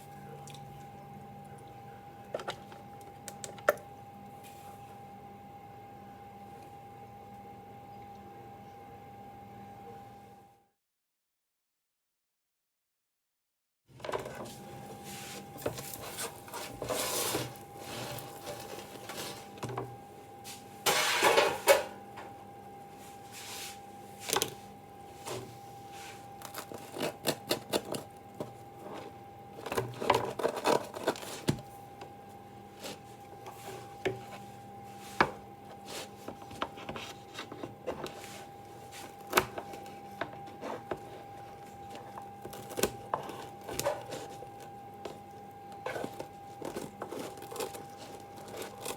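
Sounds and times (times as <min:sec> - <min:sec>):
faint steady hum: 0:00.0 - 0:10.7, 0:14.1 - 0:48.9
rubbing or rustling: 0:15.0 - 0:19.6.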